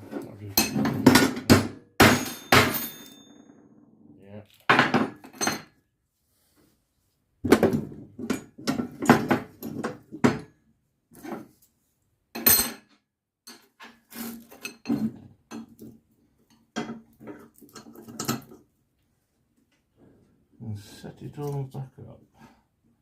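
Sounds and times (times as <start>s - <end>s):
metallic clanks of tools: 0.1s - 3.5s, 12.4s - 15.9s.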